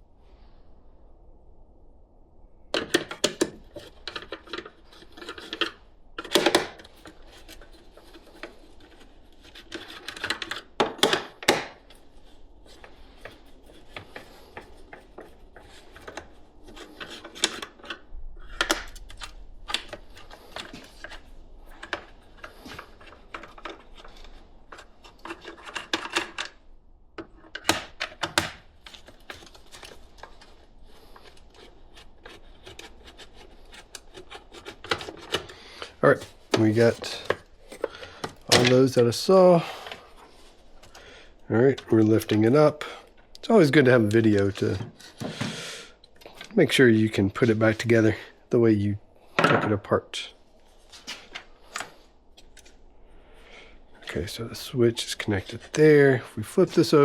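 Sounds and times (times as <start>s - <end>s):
hand tools clicking and rattling: 12.7s - 26.6s.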